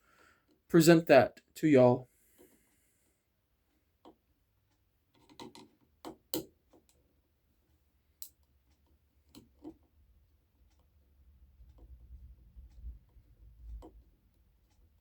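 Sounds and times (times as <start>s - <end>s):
small tool clicking and tapping: 5.2s - 7.0s, 8.2s - 9.9s.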